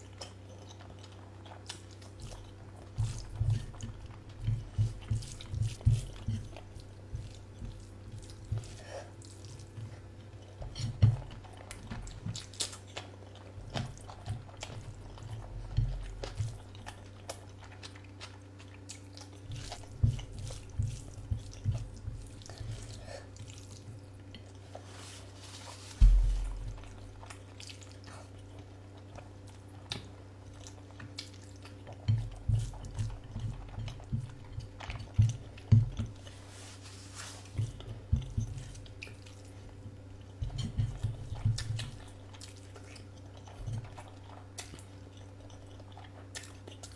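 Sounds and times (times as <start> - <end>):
person chewing with wet smacks: 0.0 - 46.9
loud dull thump: 26.0 - 26.8.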